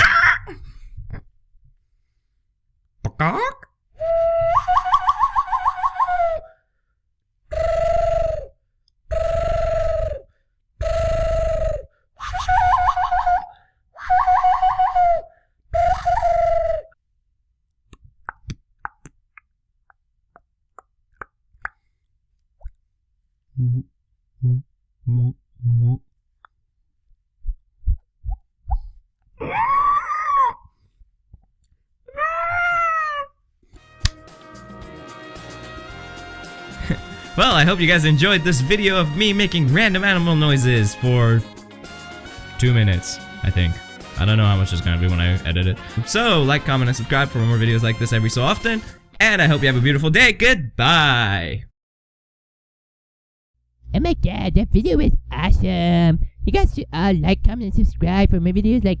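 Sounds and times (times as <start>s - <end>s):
person imitating animal call: 0.0s - 0.5s, 9.1s - 16.9s.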